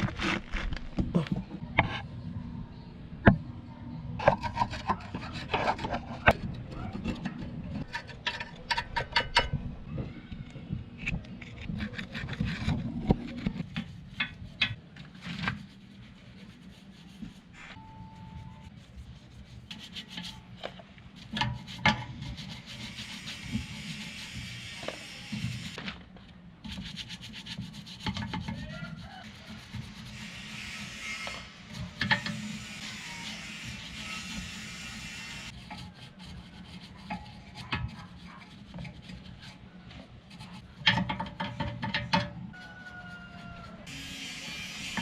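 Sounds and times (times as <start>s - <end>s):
hand tools scraping metal parts: 4.2s - 9.6s, 27.5s - 39.6s.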